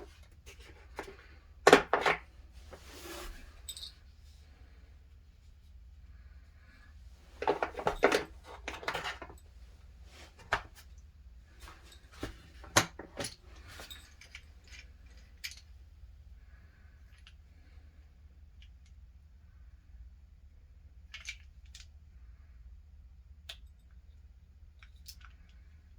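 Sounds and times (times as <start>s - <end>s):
metal and plastic tool parts clattering: 0.0s - 4.0s, 7.3s - 9.5s, 10.2s - 10.9s, 11.6s - 15.7s.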